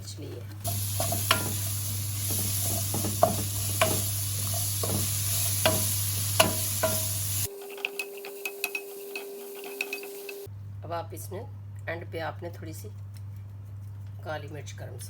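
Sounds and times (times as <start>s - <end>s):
food sizzling in a frying pan: 0.6s - 10.5s
spoon knocking against pan: 0.7s - 7.3s.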